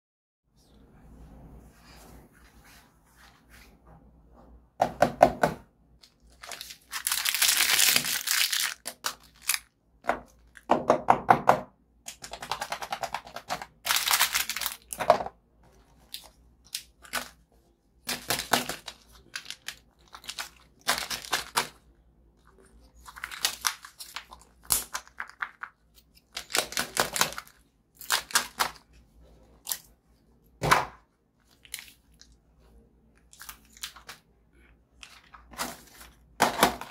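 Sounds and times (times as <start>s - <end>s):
plastic wrapper tearing and crinkling: 6.0s - 9.8s, 13.8s - 15.0s, 18.1s - 21.8s, 22.5s - 28.9s, 33.2s - 34.3s.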